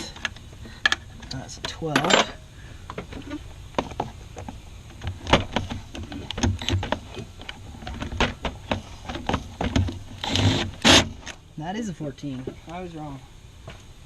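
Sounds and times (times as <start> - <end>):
metal hand tools clinking: 1.3 - 2.4.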